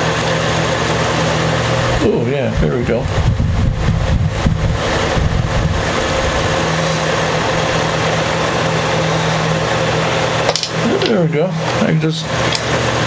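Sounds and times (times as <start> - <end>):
low hum: 0.0 - 11.6
mechanical hiss: 5.9 - 11.8.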